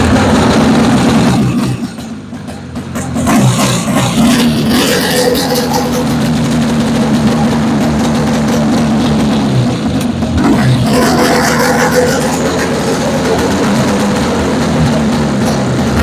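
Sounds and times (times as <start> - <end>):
snowmobile engine running: 0.0 - 16.0.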